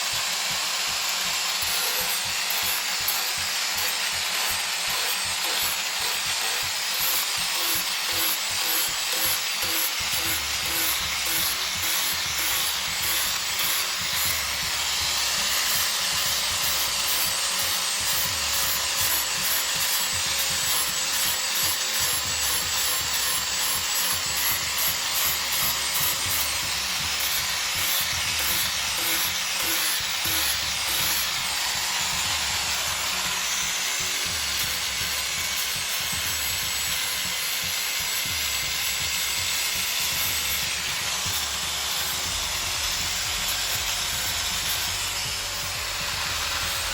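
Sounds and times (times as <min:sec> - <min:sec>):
wood being sanded: 0:00.0 - 0:46.9.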